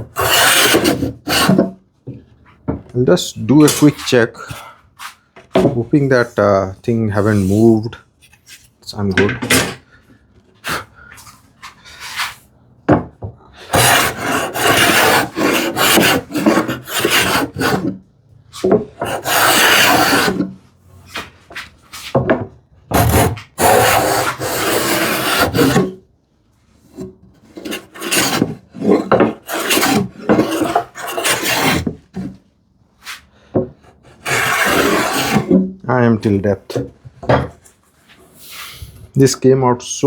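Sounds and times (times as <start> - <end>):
wooden plane shearing wood: 0.0 - 1.7, 13.6 - 18.0, 18.6 - 21.6, 22.9 - 26.0, 26.9 - 32.3, 33.8 - 35.6.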